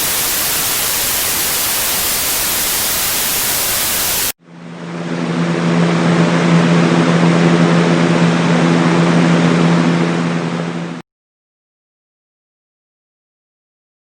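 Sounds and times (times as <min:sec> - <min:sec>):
white noise machine rushing: 0:00.0 - 0:11.0.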